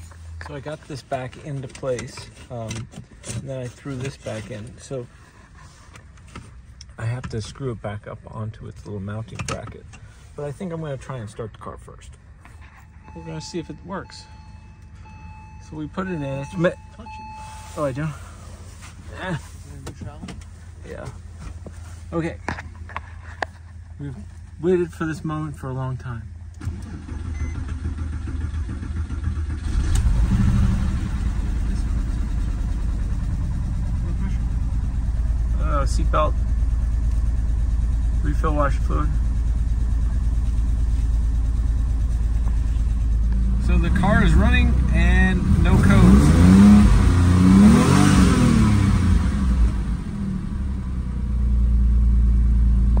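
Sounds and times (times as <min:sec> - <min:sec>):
car engine revving and idling: 0:00.0 - 0:53.0
engine starter cranking: 0:26.5 - 0:31.4.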